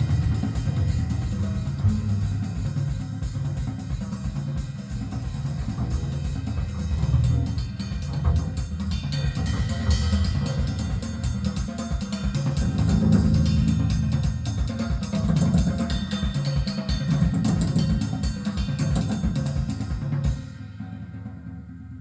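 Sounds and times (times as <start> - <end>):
bass line: 0.0 - 3.9, 5.0 - 11.7, 12.4 - 15.8
drum kit beat: 0.0 - 20.6.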